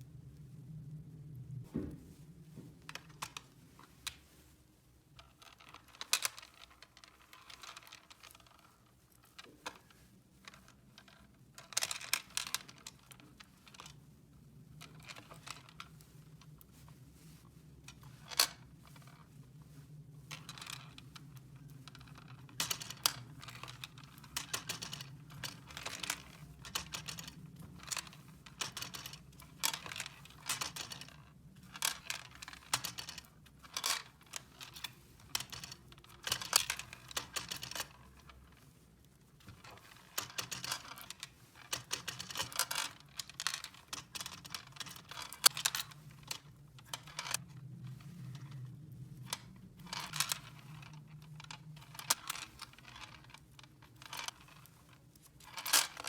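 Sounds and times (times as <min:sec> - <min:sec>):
crinkling: 0:14.7 - 0:56.0.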